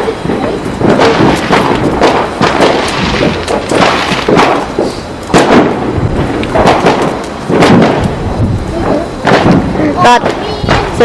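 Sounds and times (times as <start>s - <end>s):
fireworks banging and crackling: 0.0s - 11.0s
steady low rumble: 0.0s - 11.0s.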